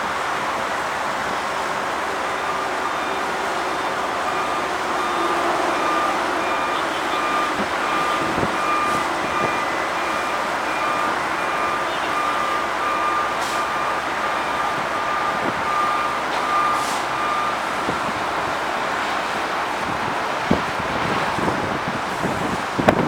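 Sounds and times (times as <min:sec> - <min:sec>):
reversing vehicle backup alarm: 0:00.0 - 0:23.0
wind noise: 0:07.2 - 0:09.8, 0:19.6 - 0:23.0.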